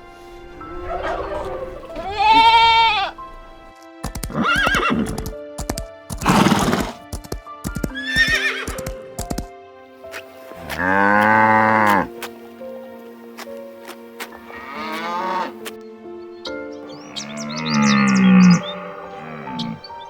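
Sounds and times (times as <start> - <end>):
background music: 0.0 - 20.0
animal calls: 0.6 - 3.2, 16.9 - 20.0.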